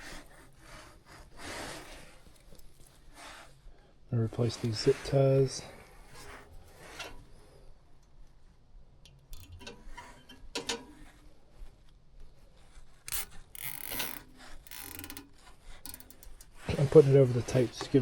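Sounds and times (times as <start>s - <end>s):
handling noise and clicks: 9.0s - 11.1s, 13.0s - 16.6s
zip ties ratcheting: 13.0s - 16.6s.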